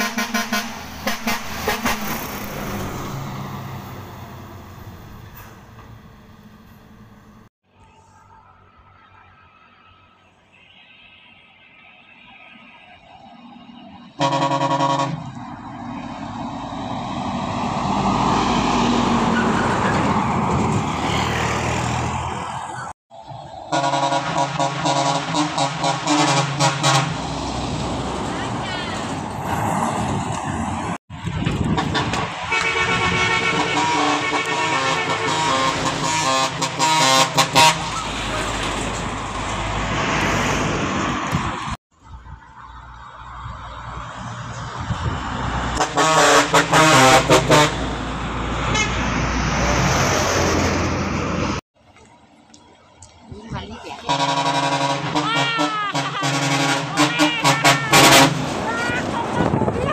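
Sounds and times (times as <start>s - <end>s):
truck horn chord: 0.0s - 2.2s, 14.2s - 15.4s, 31.8s - 37.9s, 45.8s - 47.8s
truck engine and road noise: 0.0s - 59.9s.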